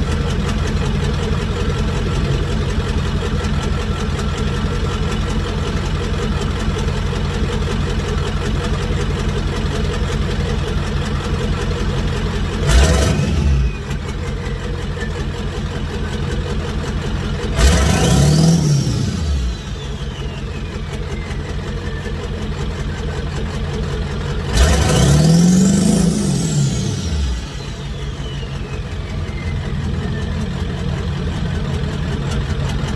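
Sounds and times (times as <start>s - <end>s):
diesel engine idling and revving: 0.0s - 32.9s
turbo whistle: 17.6s - 23.1s, 24.6s - 31.1s.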